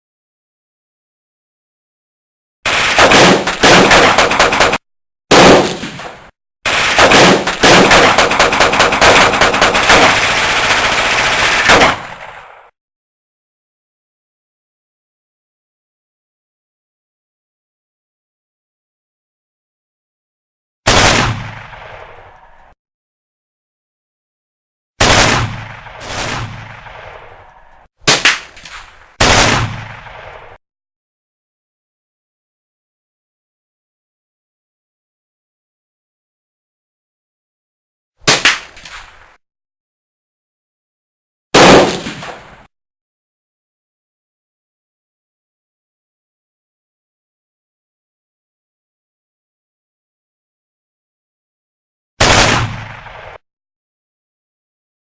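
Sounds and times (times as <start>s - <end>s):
gunshots: 2.7s - 12.7s, 20.9s - 22.5s, 25.0s - 30.6s, 38.2s - 39.3s, 41.6s - 42.7s, 52.2s - 53.4s
machine-gun fire: 2.7s - 12.7s, 20.9s - 22.1s, 25.0s - 27.3s, 29.0s - 30.6s, 41.6s - 42.5s, 52.2s - 53.4s.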